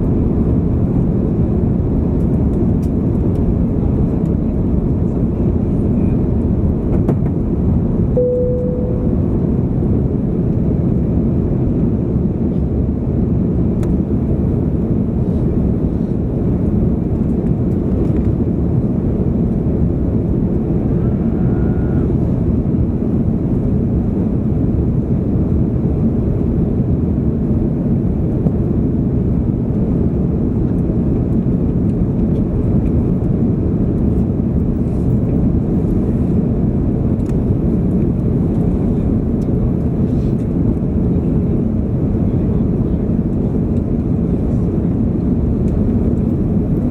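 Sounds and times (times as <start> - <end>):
airplane cabin rumble: 0.0 - 46.9
faint tone: 8.2 - 9.4.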